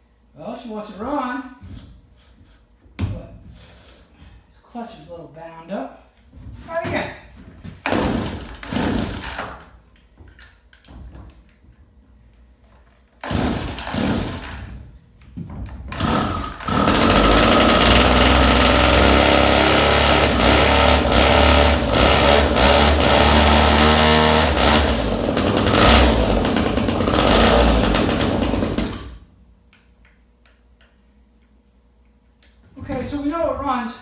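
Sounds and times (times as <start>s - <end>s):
chainsaw running: 7.8s - 9.5s, 13.2s - 14.8s, 15.9s - 29.2s
chainsaw pull-starting: 7.8s - 9.7s, 13.2s - 14.8s, 15.9s - 29.2s.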